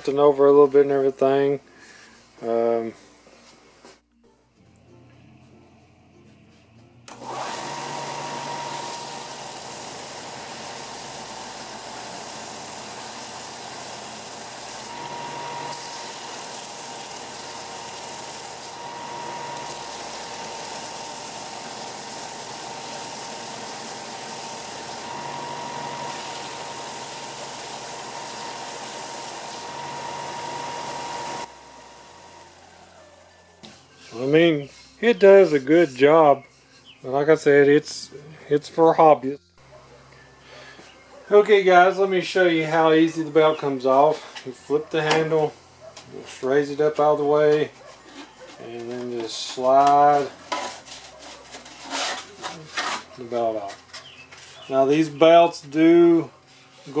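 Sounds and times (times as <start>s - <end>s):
belt sander whining: 6.8s - 34.5s
wood being sanded: 7.2s - 32.6s.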